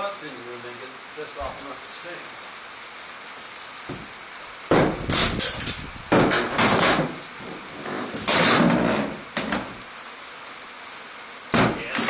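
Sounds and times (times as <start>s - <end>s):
wooden boards knocking and scraping: 3.9s - 4.1s, 4.7s - 9.8s, 11.5s - 12.0s.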